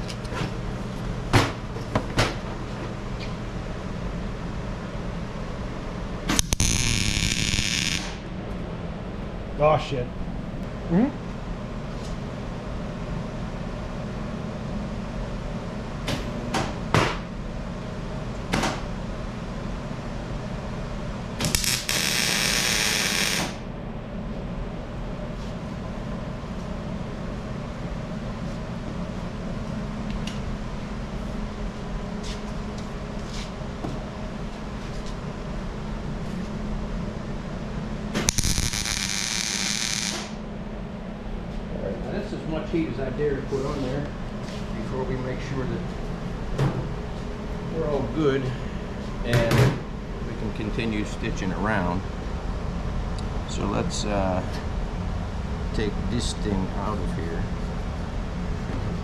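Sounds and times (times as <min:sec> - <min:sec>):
steady shop hum: 0:00.0 - 0:59.0
welding arc hissing: 0:06.3 - 0:08.2, 0:21.4 - 0:23.6, 0:38.3 - 0:40.4.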